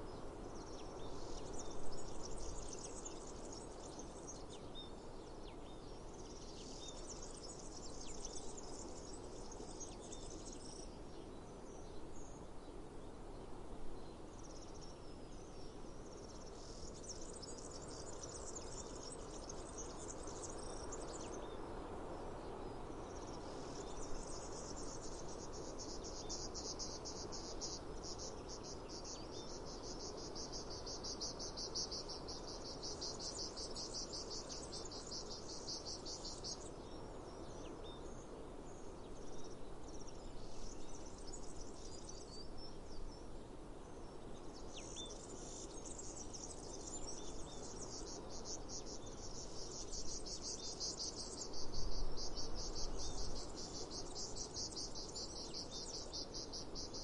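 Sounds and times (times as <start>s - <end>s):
cicadas buzzing: 45.3s - 57.0s.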